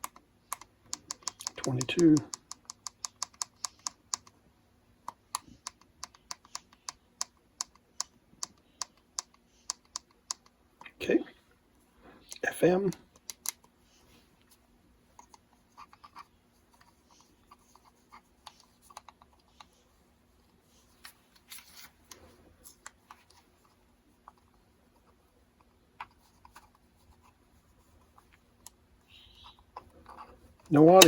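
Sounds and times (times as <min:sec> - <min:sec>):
clicks and taps handling radio: 0:00.0 - 0:04.4, 0:05.0 - 0:11.0, 0:12.3 - 0:13.8, 0:15.2 - 0:19.8.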